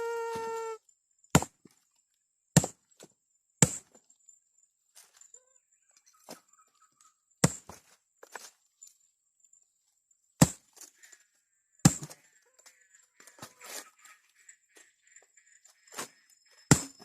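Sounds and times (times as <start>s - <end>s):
chopping strikes into wood: 1.3s - 1.6s, 2.6s - 2.8s, 3.6s - 4.0s, 7.4s - 7.8s, 10.4s - 10.7s, 11.8s - 12.2s, 16.7s - 17.0s.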